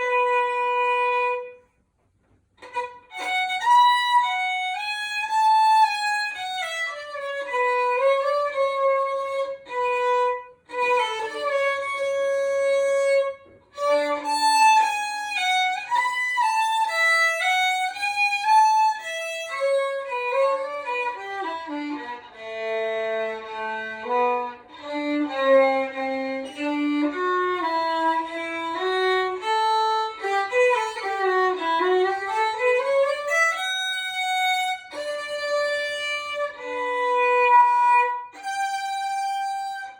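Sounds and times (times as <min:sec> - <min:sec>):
solo violin melody: 0:00.0 - 0:01.9, 0:02.6 - 0:39.9.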